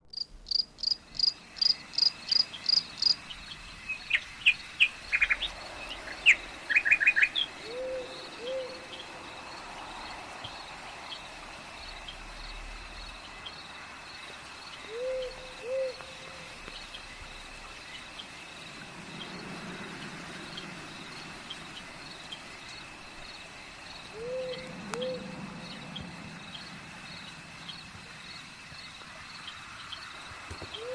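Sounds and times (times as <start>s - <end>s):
owl hooting: 6.7s - 9.0s, 14.9s - 16.5s, 24.1s - 25.4s.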